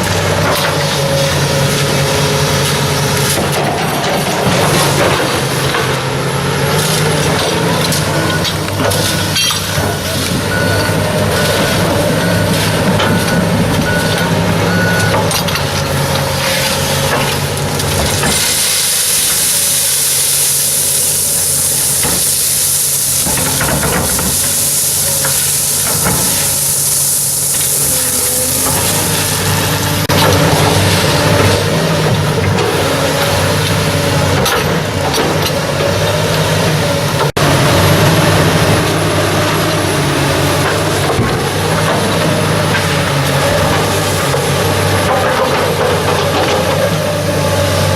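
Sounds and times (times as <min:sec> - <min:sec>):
heavy machine engine running: 0:00.0 - 0:47.9
loud steady hiss: 0:17.9 - 0:30.1.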